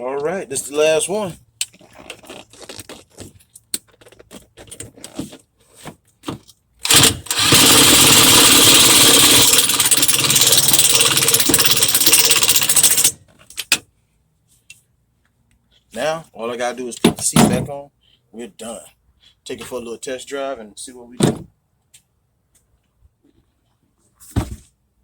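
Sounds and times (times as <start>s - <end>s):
parts clicking and knocking: 6.2s - 13.8s.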